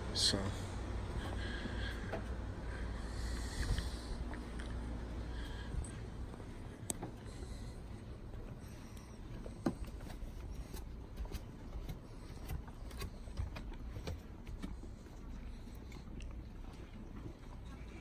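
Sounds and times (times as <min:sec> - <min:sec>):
faint clicks and taps: 0:09.3 - 0:18.0.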